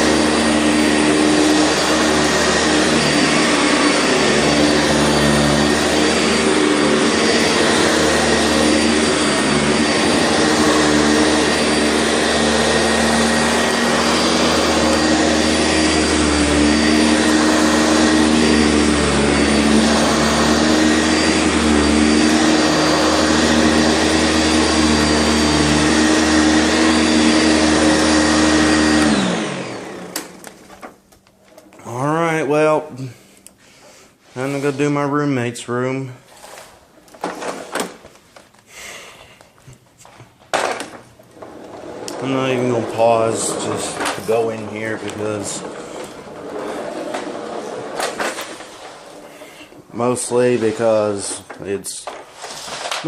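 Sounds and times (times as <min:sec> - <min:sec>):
vacuum motor winding down: 0:00.0 - 0:30.6, 0:41.2 - 0:49.7
vacuum cleaner running: 0:00.0 - 0:53.0.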